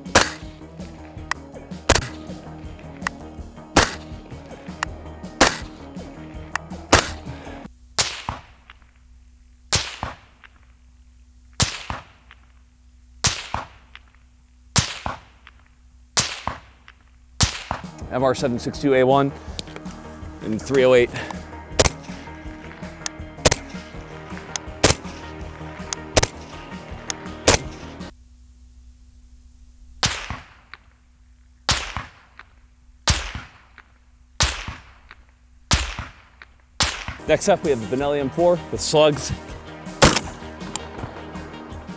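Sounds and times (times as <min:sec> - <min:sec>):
faint gunshot reports: 0:00.0 - 0:00.6, 0:01.9 - 0:02.3, 0:03.8 - 0:04.2, 0:05.4 - 0:05.7, 0:07.0 - 0:07.3, 0:09.7 - 0:10.4, 0:11.6 - 0:12.2, 0:21.1 - 0:22.2, 0:23.4 - 0:23.8, 0:24.8 - 0:25.2, 0:26.2 - 0:26.6, 0:27.5 - 0:27.8, 0:40.0 - 0:40.5
bullet whip cracks: 0:00.0 - 0:00.8, 0:01.9 - 0:02.4, 0:03.8 - 0:04.2, 0:05.4 - 0:05.8, 0:06.9 - 0:07.4, 0:08.0 - 0:08.8, 0:09.7 - 0:10.4, 0:11.6 - 0:12.4, 0:13.3 - 0:14.0, 0:14.8 - 0:15.5, 0:16.2 - 0:18.0, 0:21.2 - 0:22.2, 0:23.4 - 0:23.9, 0:24.8 - 0:25.3, 0:26.2 - 0:26.6, 0:27.5 - 0:27.9, 0:30.0 - 0:30.8, 0:31.7 - 0:32.5, 0:33.1 - 0:33.8, 0:34.4 - 0:37.3, 0:40.0 - 0:40.8.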